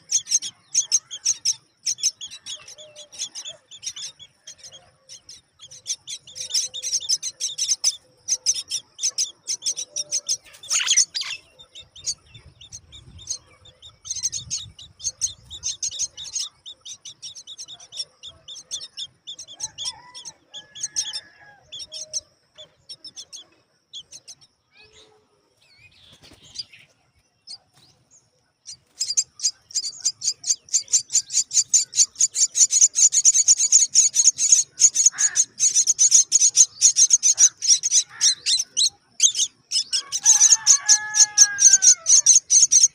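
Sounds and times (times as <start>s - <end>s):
nestlings begging with high chirping: 0.0s - 42.9s.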